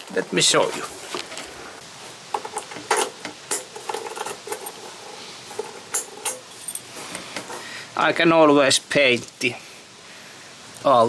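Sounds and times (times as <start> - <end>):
keys jangling: 2.6 - 6.9.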